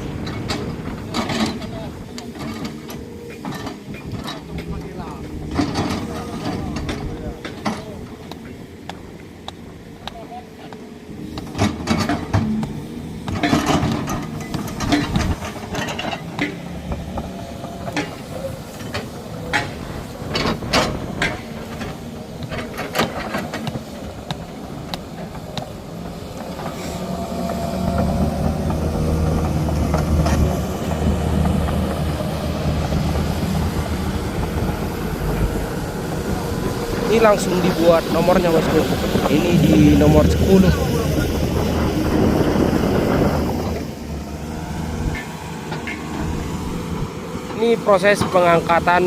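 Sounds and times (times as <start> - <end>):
heavy machine diesel engine: 0.0 - 49.0
sharp knocks and clanks: 5.4 - 40.8, 45.0 - 46.6.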